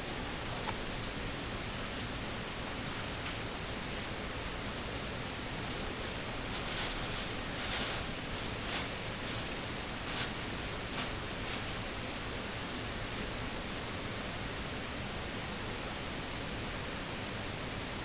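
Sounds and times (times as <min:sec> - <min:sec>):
steady hiss: 0:00.0 - 0:18.0
hands rustling laptop parts: 0:04.9 - 0:11.8.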